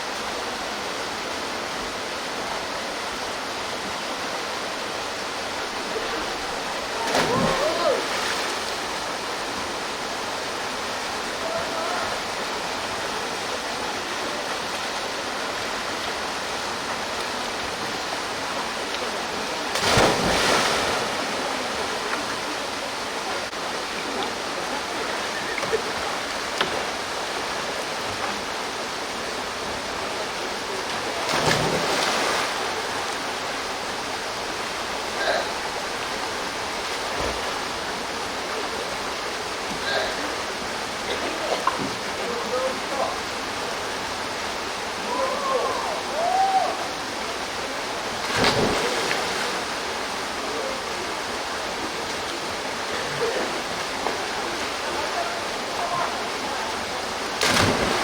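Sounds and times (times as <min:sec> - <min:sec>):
diver splashing into water: 0:06.8 - 0:08.7, 0:19.8 - 0:21.4, 0:48.2 - 0:49.6, 0:57.4 - 0:58.0
waterfall pouring into a pool: 0:06.9 - 0:08.6, 0:18.6 - 0:22.2, 0:57.4 - 0:58.0.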